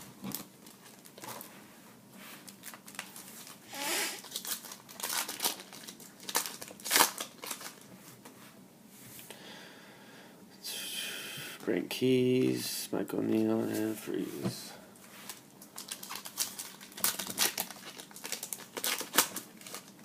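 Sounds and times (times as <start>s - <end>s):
foil wrapper crinkling and tearing: 2.5s - 3.6s, 4.2s - 7.9s, 15.3s - 20.0s.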